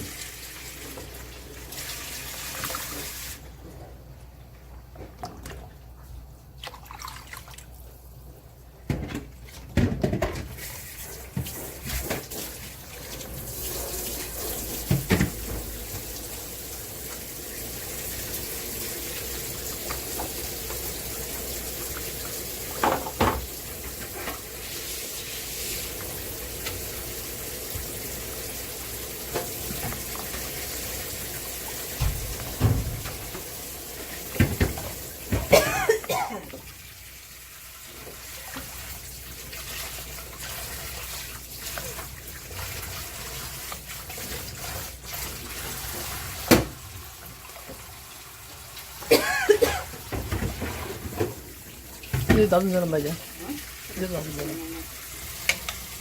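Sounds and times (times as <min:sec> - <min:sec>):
tap water running into sink: 0:00.0 - 0:03.4, 0:08.9 - 0:56.0
knocks and clatters in sink: 0:08.8 - 0:10.6, 0:11.3 - 0:16.2, 0:22.6 - 0:24.4, 0:31.9 - 0:36.6, 0:49.0 - 0:52.9.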